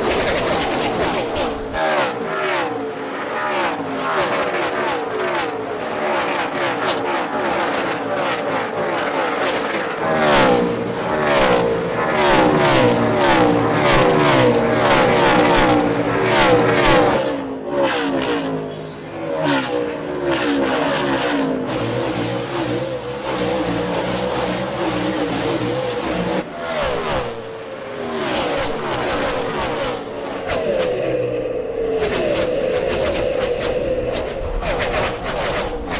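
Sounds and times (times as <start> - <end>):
race cars passing at speed: 0.0 - 35.9.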